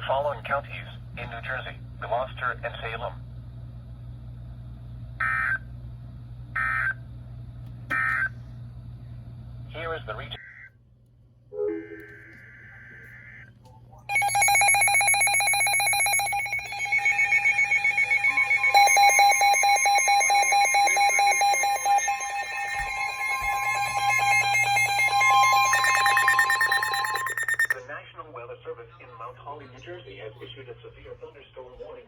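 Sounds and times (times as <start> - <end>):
electronic alert tones: 14.1 - 27.8
rapid pulsing beep: 14.1 - 27.8.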